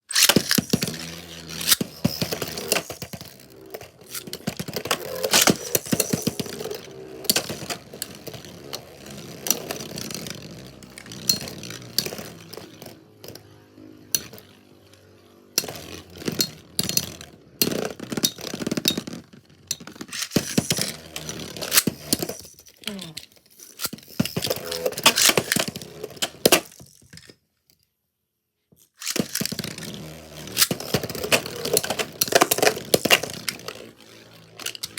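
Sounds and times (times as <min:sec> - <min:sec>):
spinning tops scraping plastic: 0:00.0 - 0:27.3, 0:29.0 - 0:34.9
spinning tops clashing: 0:00.1 - 0:19.2, 0:19.8 - 0:22.5.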